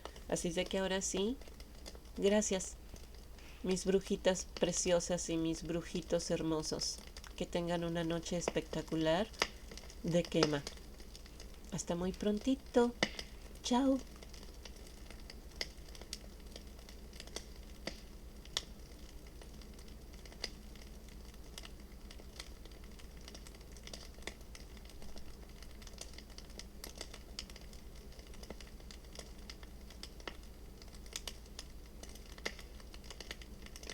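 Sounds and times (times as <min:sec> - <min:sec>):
bonfire crackling and popping: 0:00.0 - 0:33.9.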